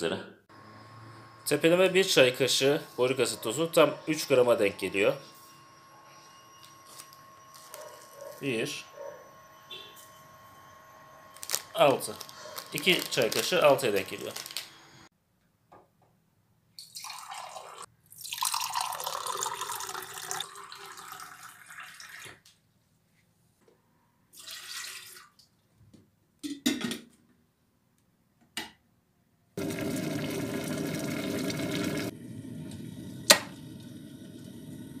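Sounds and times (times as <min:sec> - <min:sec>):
water running and pouring: 0:16.8 - 0:22.4, 0:24.4 - 0:25.4, 0:29.6 - 0:35.0.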